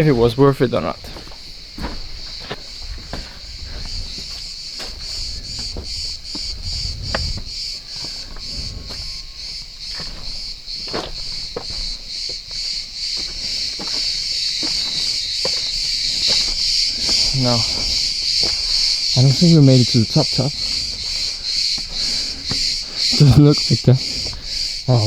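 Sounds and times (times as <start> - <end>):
cicadas buzzing: 0.0 - 25.0
wind rumble on microphone: 1.0 - 10.5.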